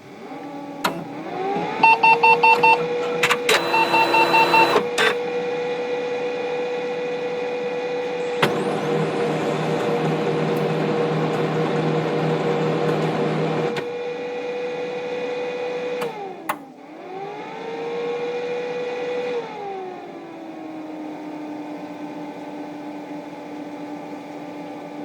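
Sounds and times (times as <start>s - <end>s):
printer mechanical whirr: 0.1s - 5.6s
printer motor whine: 0.1s - 9.5s.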